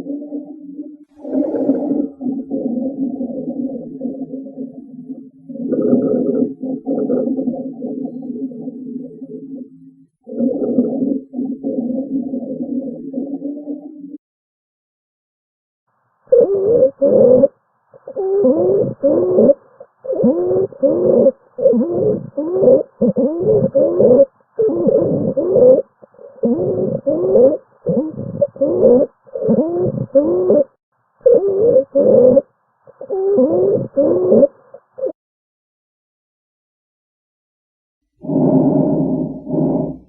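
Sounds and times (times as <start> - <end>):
wheezing breath sounds: 38.2 - 40.0.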